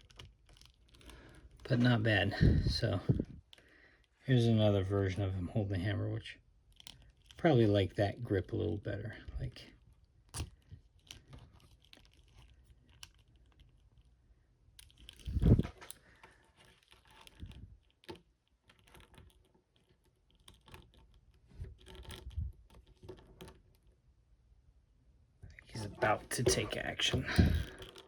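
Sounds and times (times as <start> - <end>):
plastic figure clicks and rustles: 0.0 - 4.2, 6.6 - 7.8, 9.7 - 24.0, 25.7 - 28.0.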